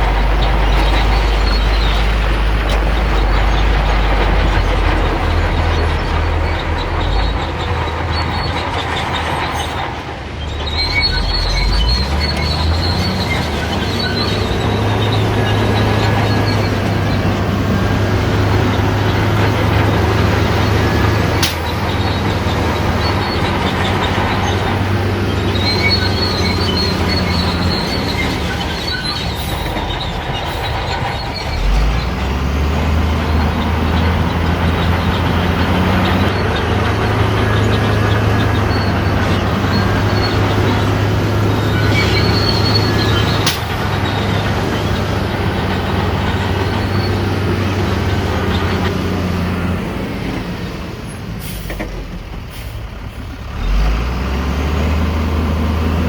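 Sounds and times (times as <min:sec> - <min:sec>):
bulldozer diesel engine running: 0:00.0 - 0:56.0
steel tracks squealing: 0:00.0 - 0:56.0.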